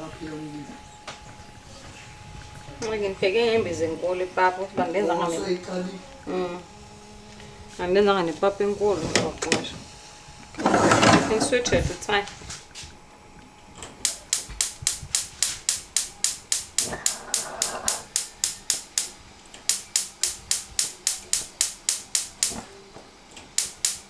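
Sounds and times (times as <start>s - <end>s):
rapid mechanical clicking: 14.0s - 22.8s, 23.4s - 24.0s.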